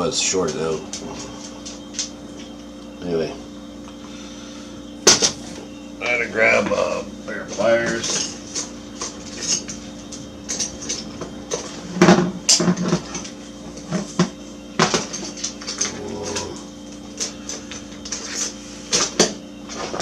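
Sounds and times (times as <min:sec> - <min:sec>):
steady low hum: 0:00.0 - 0:20.0
metal tools clinking on workbench: 0:07.5 - 0:11.8.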